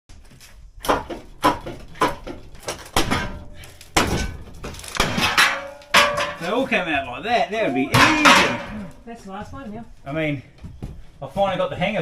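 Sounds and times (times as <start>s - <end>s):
bangs and knocks: 0.8s - 6.7s, 7.9s - 9.0s.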